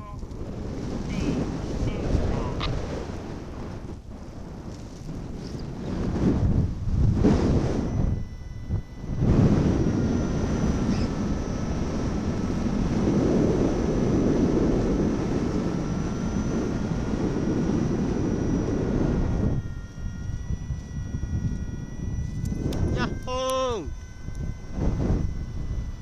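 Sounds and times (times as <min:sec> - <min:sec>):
wind buffeting microphone: 0:00.0 - 0:26.0
faint high tones: 0:15.2 - 0:26.0.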